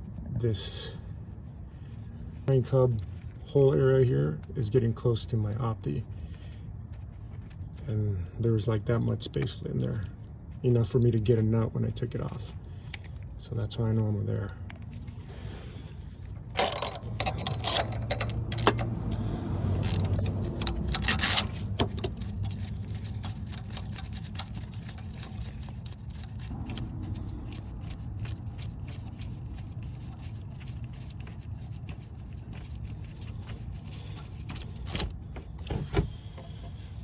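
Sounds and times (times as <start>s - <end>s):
ratchet wrench clicking: 16.6s - 19.0s, 19.7s - 26.8s.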